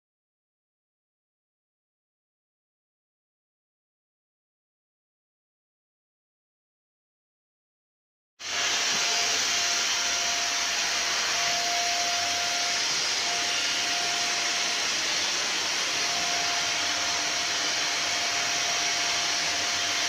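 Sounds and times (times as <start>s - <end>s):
vacuum cleaner running: 8.4s - 20.0s.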